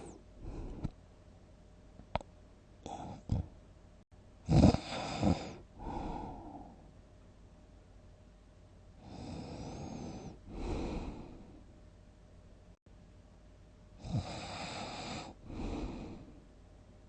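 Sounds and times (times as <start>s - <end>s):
loud snort: 4.5s - 6.6s, 14.0s - 16.2s
person snoring: 4.5s - 6.9s, 9.0s - 11.6s, 14.0s - 16.4s.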